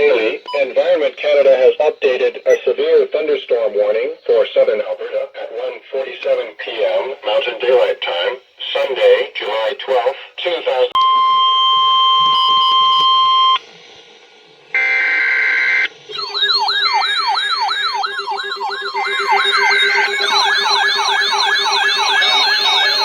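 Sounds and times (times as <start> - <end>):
siren tones wailing: 11.0 - 13.6, 14.7 - 23.0
steady alert tone: 16.1 - 23.0.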